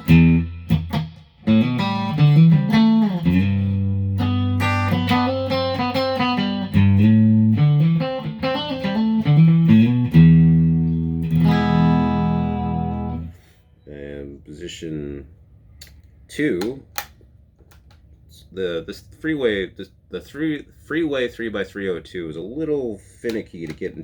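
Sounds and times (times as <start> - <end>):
electric guitar through amplifier: 0.0 - 13.5
sustained bass notes: 9.2 - 13.3.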